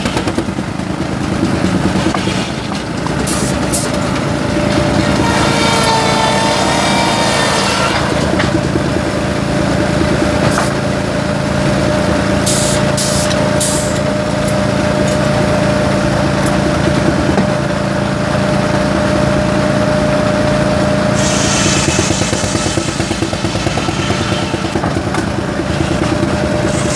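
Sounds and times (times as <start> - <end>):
engine chugging: 0.0 - 26.9
spinning saw whine: 3.0 - 26.9
short hissing bursts: 12.4 - 14.0, 21.2 - 24.5.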